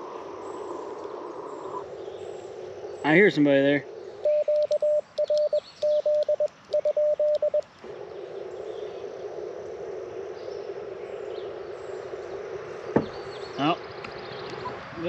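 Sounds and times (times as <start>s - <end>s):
radio receiver hiss: 0.0s - 14.7s
morse code tone: 4.2s - 7.6s.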